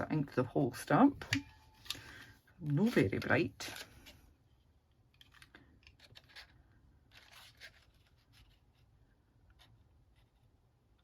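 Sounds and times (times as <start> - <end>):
paper and card rustling: 1.4 - 4.2, 5.1 - 10.6.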